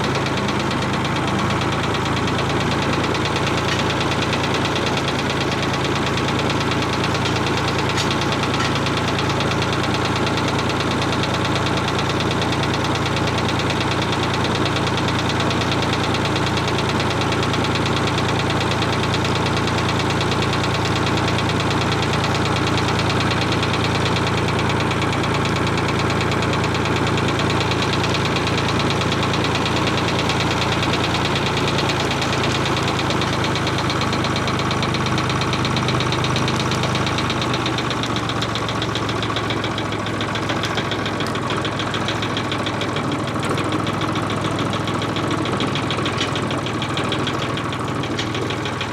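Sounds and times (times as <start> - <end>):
tractor engine running: 0.0 - 48.9.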